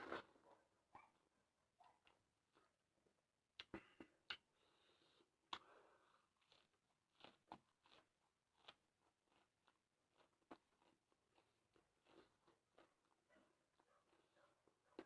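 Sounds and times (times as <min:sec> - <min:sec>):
chewing raw vegetables: 0:02.0 - 0:15.0
wet mouth clicks: 0:03.6 - 0:04.5.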